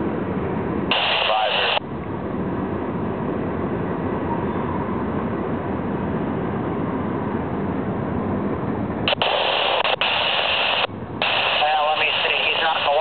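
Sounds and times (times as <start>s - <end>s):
freight train rumbling by: 0.0s - 9.1s
radio static hiss: 0.9s - 1.8s, 9.1s - 13.0s.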